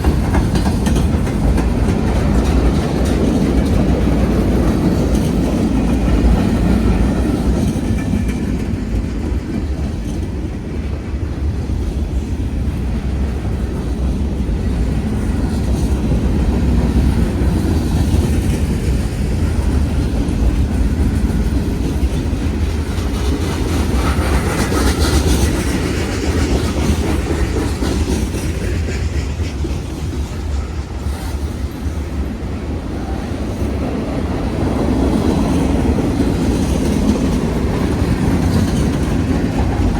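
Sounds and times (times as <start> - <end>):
wheels clacking over rail joints: 0.0 - 11.7, 33.7 - 39.9
freight train rumbling past: 0.0 - 39.9.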